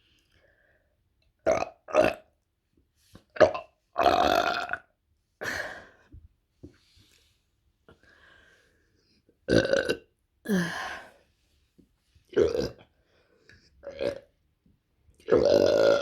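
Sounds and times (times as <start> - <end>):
woman belching: 9.5 - 10.8, 15.2 - 16.0.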